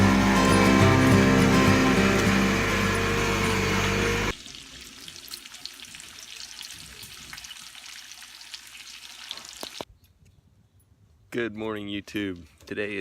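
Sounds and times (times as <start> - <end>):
background music: 0.0 - 4.3.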